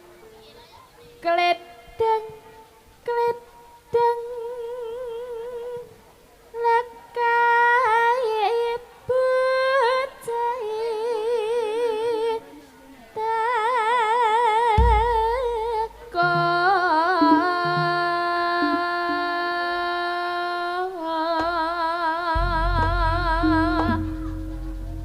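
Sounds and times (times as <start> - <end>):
woman singing with vibrato: 1.2 - 6.0, 6.6 - 12.5, 13.2 - 25.0
deep bass notes: 22.4 - 25.0.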